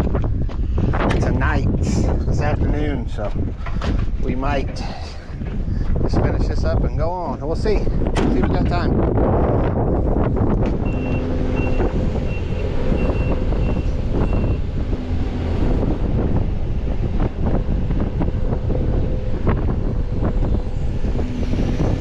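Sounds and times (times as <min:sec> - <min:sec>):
diesel engine running: 0:00.0 - 0:22.0
backup alarm beeping: 0:10.8 - 0:14.6.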